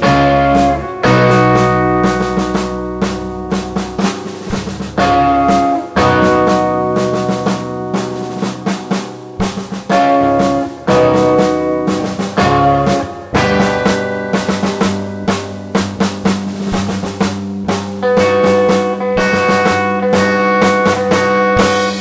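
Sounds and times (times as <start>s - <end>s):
live band music: 0.0s - 22.0s
snare and bass drum hits: 0.0s - 22.0s.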